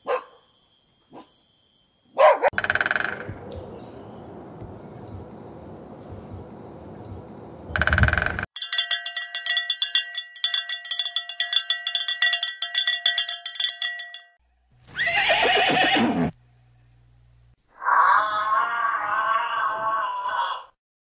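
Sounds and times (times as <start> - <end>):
steady ringing tones: 7.8 - 14.4
horse whinnying: 14.9 - 16.4.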